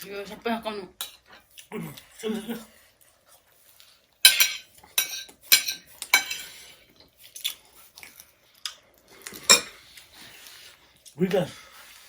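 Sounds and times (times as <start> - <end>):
utensils clinking on a plate: 4.2 - 6.8, 9.2 - 9.9.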